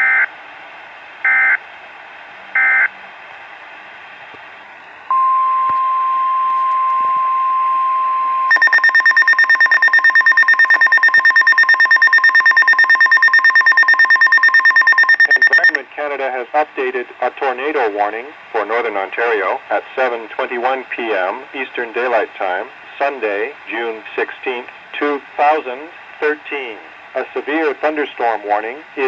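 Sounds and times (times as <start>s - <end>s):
pulsing two-pitch beeping alarm: 5.1s - 15.8s
steady warning alarm tone: 5.1s - 15.8s
digital data bursts: 8.5s - 15.8s.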